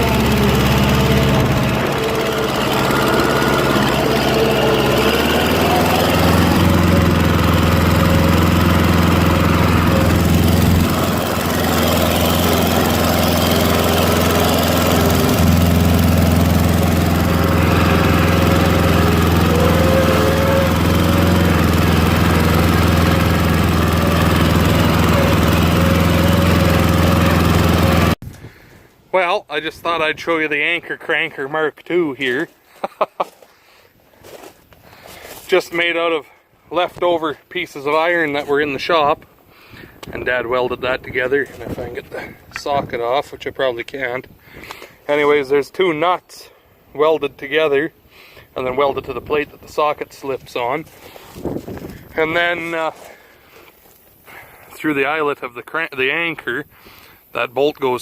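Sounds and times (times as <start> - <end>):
engine running steadily: 0.0 - 28.2.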